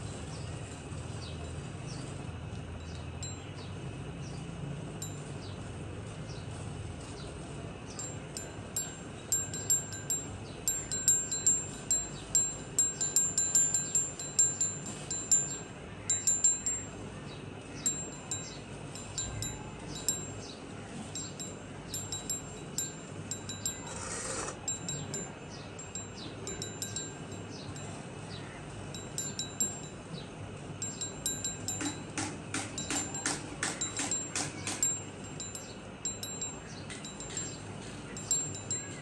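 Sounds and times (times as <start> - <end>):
high-pitched chimes tinkling: 7.9 - 39.0.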